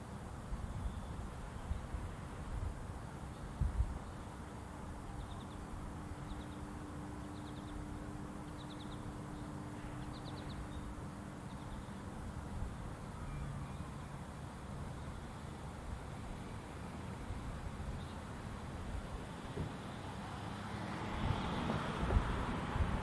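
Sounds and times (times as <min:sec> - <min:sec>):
bird chirping: 0:05.1 - 0:12.0
faint low siren hum: 0:05.1 - 0:15.3.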